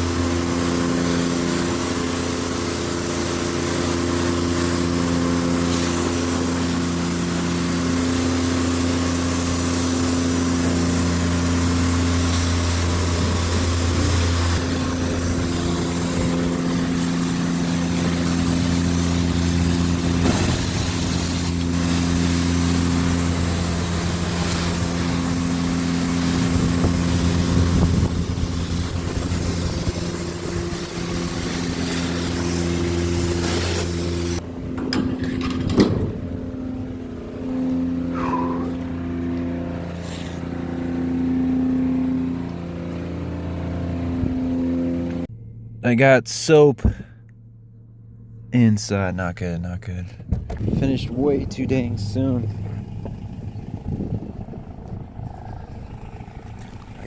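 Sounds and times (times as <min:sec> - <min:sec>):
pressure washer spray hissing: 0:00.0 - 0:34.4
pump hum: 0:00.0 - 0:48.9, 0:50.0 - 0:57.0.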